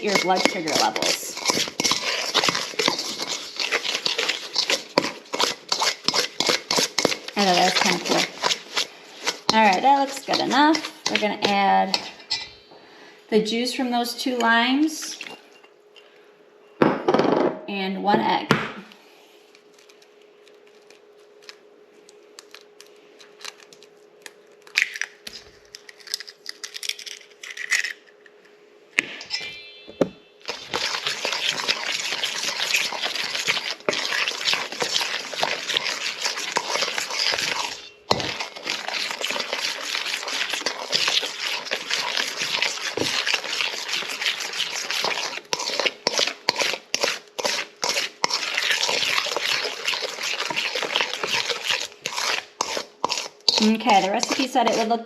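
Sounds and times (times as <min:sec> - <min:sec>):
wet churning of mixing batter: 0:00.0 - 0:12.3, 0:14.3 - 0:15.6, 0:30.4 - 0:55.0.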